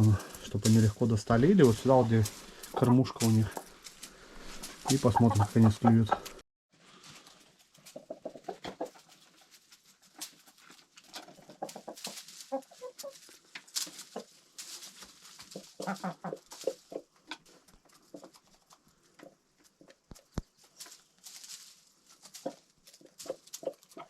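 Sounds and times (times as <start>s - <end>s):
hens clucking: 0.0s - 3.7s, 4.4s - 6.4s, 7.8s - 9.6s, 11.0s - 14.4s, 15.3s - 21.0s, 22.1s - 24.0s.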